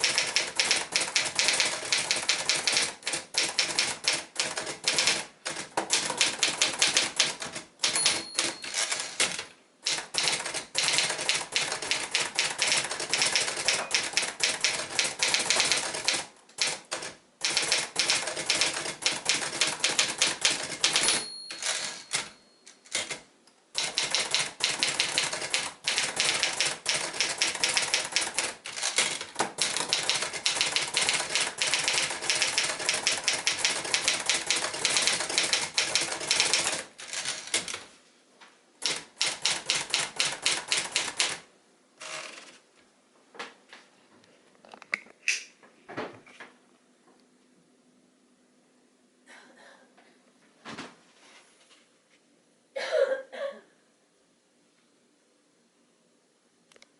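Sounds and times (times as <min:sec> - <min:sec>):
typewriter keys clacking: 0:00.0 - 0:23.2, 0:23.8 - 0:37.8, 0:38.8 - 0:41.4
typewriter bell ding: 0:07.8 - 0:09.0, 0:13.7 - 0:14.2, 0:20.8 - 0:23.1.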